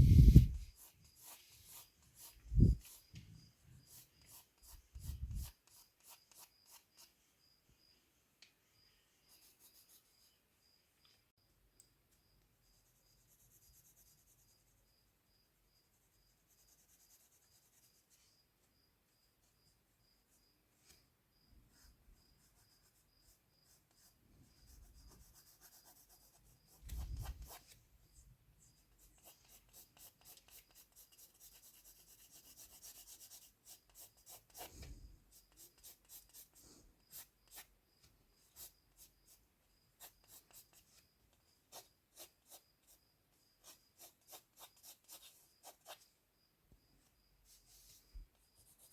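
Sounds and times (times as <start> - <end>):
pencil strokes on paper: 0.0 - 7.4, 8.8 - 10.4, 15.8 - 18.5, 21.7 - 27.8, 28.6 - 37.7, 38.4 - 46.1, 47.4 - 48.9.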